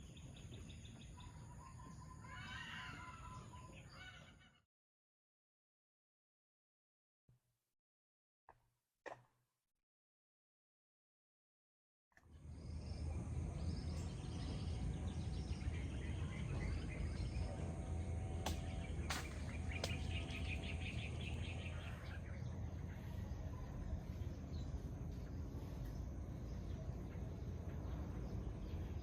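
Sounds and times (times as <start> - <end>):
low rumble: 12.3 - 29.0
insects buzzing: 12.5 - 22.4
birds chirping: 12.5 - 29.0.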